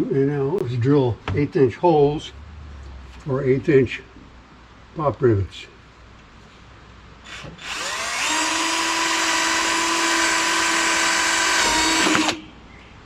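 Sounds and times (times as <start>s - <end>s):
electric drill whining: 7.2s - 12.4s.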